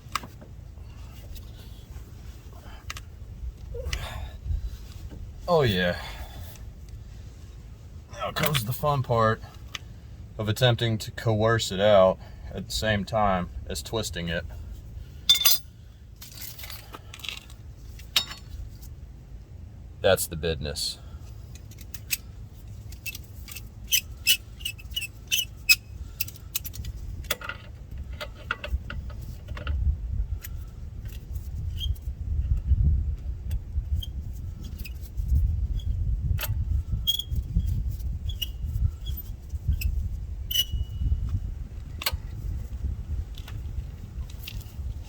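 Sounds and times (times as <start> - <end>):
steady low rumble: 0.0 - 45.0
short high squeaks: 31.6 - 32.1, 36.9 - 41.4.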